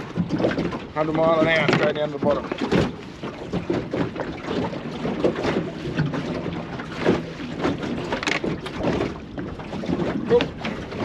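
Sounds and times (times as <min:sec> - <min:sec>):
water slapping against boat hull: 0:00.0 - 0:11.0.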